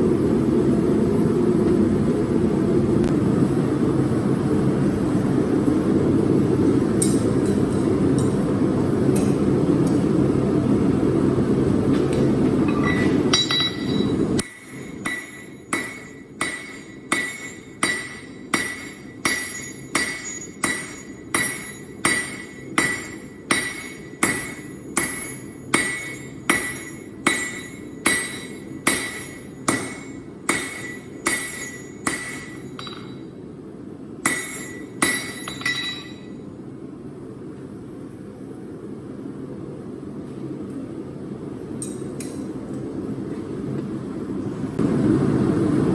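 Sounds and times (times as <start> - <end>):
hammer striking steel on anvil: 12.1 - 33.4, 34.2 - 36.4, 41.8 - 42.5.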